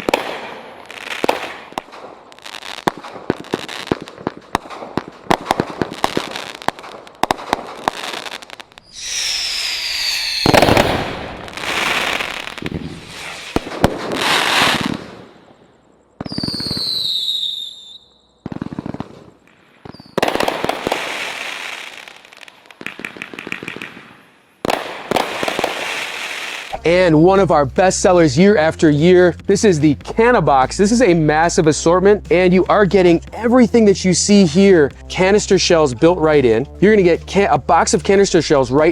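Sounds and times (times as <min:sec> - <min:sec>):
falling firework whistles: 0:00.0 - 0:02.1, 0:07.4 - 0:15.6, 0:16.2 - 0:26.8
fireworks rushing bursts: 0:00.0 - 0:15.6, 0:16.2 - 0:28.2
fireworks crackling: 0:00.0 - 0:38.9.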